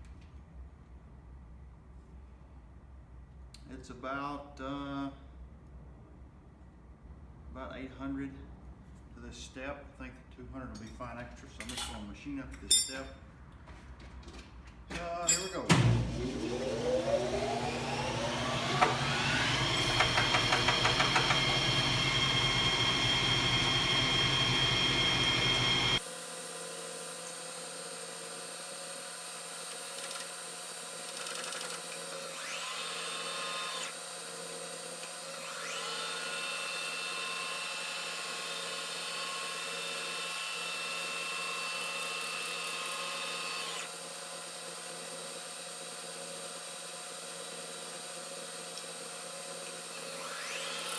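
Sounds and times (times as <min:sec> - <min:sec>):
metal lathe whining: 0:15.9 - 0:26.0, 0:31.0 - 0:50.9.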